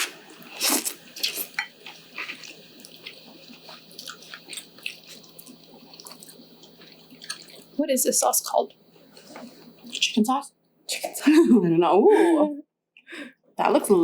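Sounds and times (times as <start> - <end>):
noodles slurping: 0.0 - 7.8
wet chewing: 0.0 - 7.8, 8.7 - 10.2.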